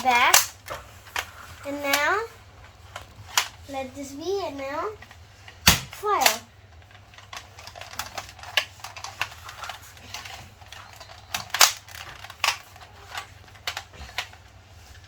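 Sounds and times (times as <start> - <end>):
loud plastic clacks: 5.0 - 14.4.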